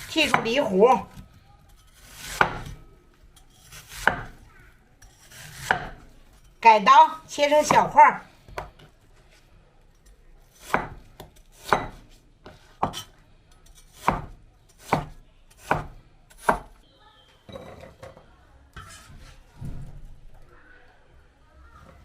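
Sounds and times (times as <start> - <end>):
knife chopping on cutting board: 3.9 - 4.4, 5.2 - 6.0, 10.6 - 13.1, 13.9 - 16.8.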